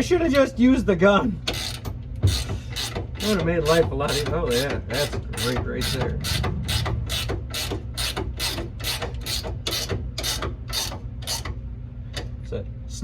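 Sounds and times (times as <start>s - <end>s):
ratchet wrench clicking: 1.5s - 4.8s, 7.1s - 11.5s.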